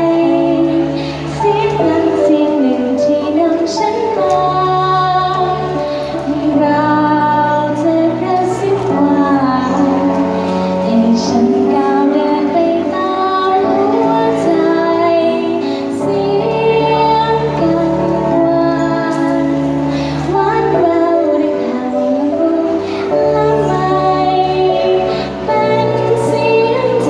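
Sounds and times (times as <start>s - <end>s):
woman singing slow song: 0.0s - 27.0s.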